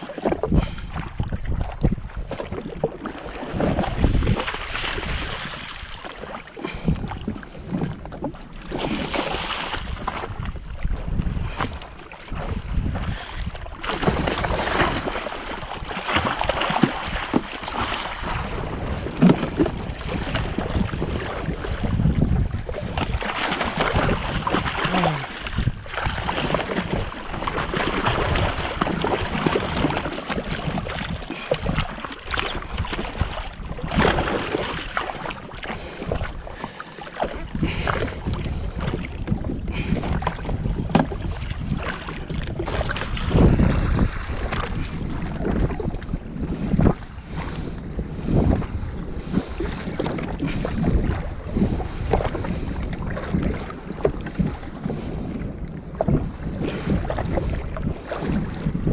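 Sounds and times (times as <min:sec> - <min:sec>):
water splashing and slapping: 0:00.0 - 0:58.9
wind buffeting microphone: 0:00.0 - 0:58.9.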